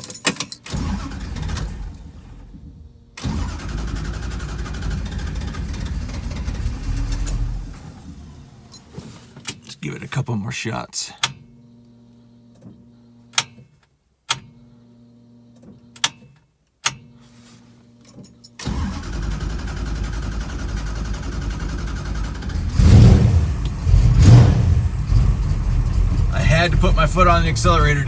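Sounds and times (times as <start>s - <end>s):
car engine starting and running: 0.1s - 10.3s, 18.6s - 28.0s.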